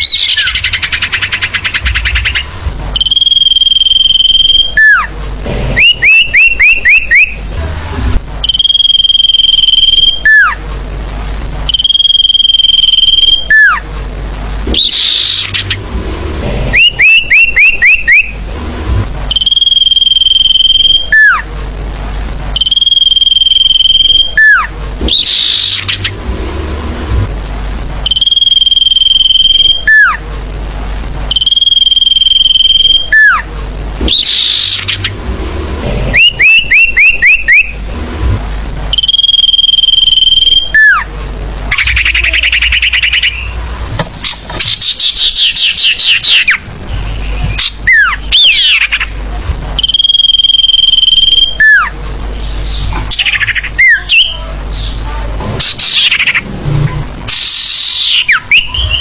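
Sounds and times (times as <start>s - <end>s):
rising chirps: 0.0s - 5.1s, 5.8s - 7.4s, 8.4s - 10.6s, 11.7s - 13.8s, 14.7s - 18.4s, 19.3s - 21.4s, 22.6s - 27.0s, 28.0s - 30.2s, 31.3s - 33.4s, 34.0s - 38.0s, 38.9s - 41.0s, 49.8s - 51.9s
whistled bird call: 0.0s - 5.1s, 5.8s - 7.4s, 8.4s - 10.6s, 11.7s - 13.8s, 14.7s - 15.8s, 16.7s - 18.4s, 19.3s - 21.4s, 22.6s - 26.1s, 28.1s - 30.2s, 31.3s - 33.4s, 34.1s - 35.1s, 36.2s - 37.8s, 39.0s - 41.0s, 41.7s - 43.6s, 44.6s - 49.1s, 49.8s - 51.9s, 57.3s - 59.0s
low hum: 0.0s - 59.0s.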